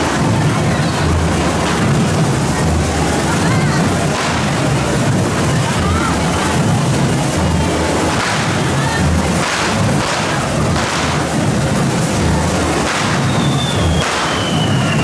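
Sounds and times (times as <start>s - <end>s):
fireworks hissing and crackling: 0.0s - 15.0s
low drumming: 0.0s - 15.0s
long falling whistle: 13.2s - 15.0s.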